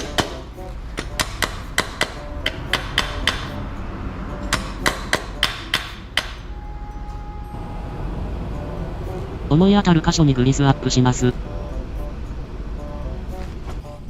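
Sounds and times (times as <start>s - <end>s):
hammer tapping on metal gear: 1.0s - 3.6s, 4.4s - 6.4s.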